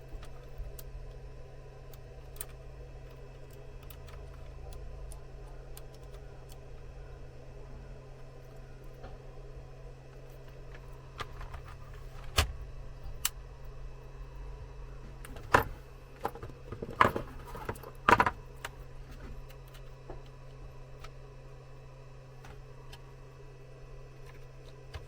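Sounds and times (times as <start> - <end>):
steady low hum: 0.0 - 25.0
small hard parts clicking and rattling: 15.3 - 20.4.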